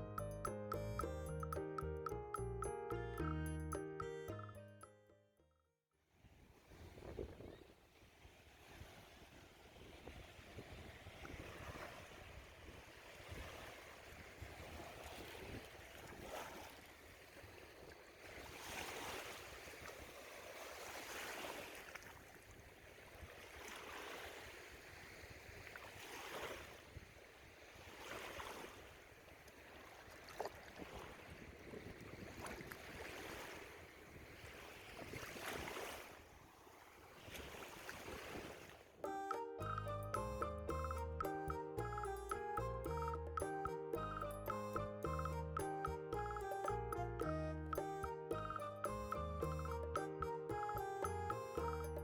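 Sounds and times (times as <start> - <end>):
wind rumbling on microphone: 6.2 - 16.6, 30.6 - 35.8
small waves washing onto shore: 6.3 - 39.0.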